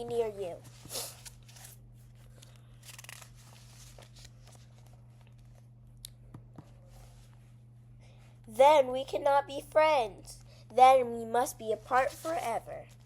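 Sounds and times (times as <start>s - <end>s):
steady low hum: 0.0s - 13.0s
paper pages rustling: 0.6s - 5.6s, 12.0s - 13.0s.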